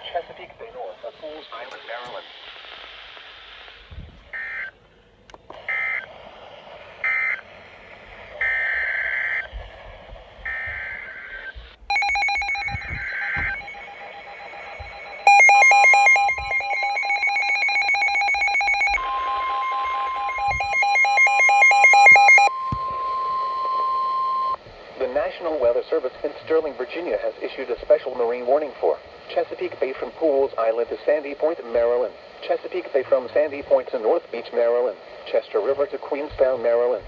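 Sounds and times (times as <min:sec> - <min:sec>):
rapid beeping pulse: 0:10.5 - 0:24.6
shrill digital data bursts: 0:11.9 - 0:22.5
alert attention-signal alarm tone: 0:11.9 - 0:24.6
steady single tone: 0:11.9 - 0:24.6.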